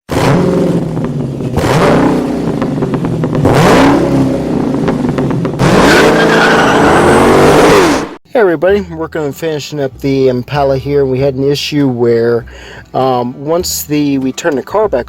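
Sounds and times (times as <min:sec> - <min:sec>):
car engine revving: 0:00.1 - 0:08.2.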